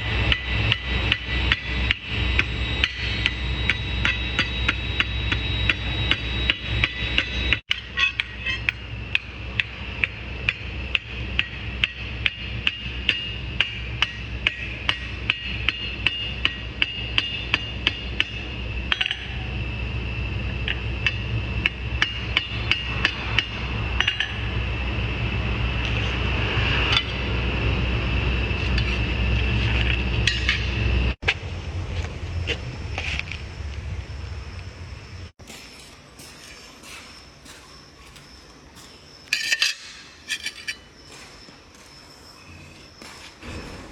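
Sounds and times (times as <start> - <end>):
steady low rumble: 23.2 - 36.5.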